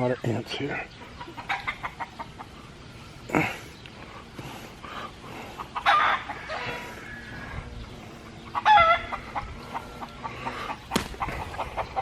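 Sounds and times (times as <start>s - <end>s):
chickens clucking: 0.0s - 12.0s
loud pitched chicken calls: 5.6s - 12.0s.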